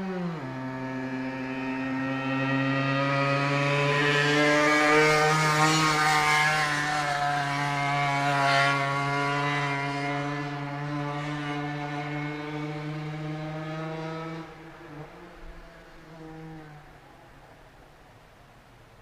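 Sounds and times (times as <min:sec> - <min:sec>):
two-stroke engine revving high: 0:00.0 - 0:14.6.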